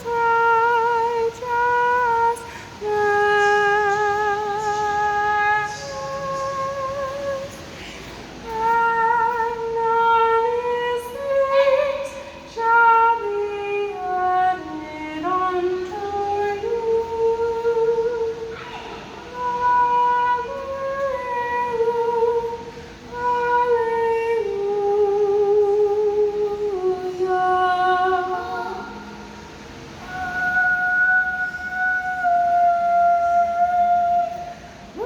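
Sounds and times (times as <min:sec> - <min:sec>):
person humming a slow tune: 0:00.0 - 0:07.8, 0:30.0 - 0:35.0.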